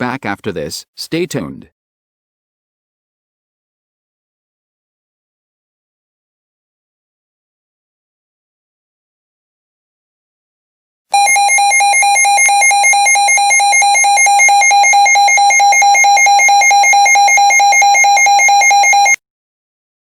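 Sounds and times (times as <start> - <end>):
high warbling alarm tone: 11.2 - 19.2.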